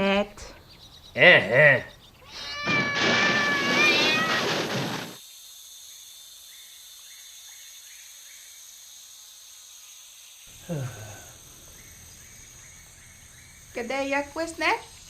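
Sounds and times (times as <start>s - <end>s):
cat-like animal yowl: 2.2s - 5.2s.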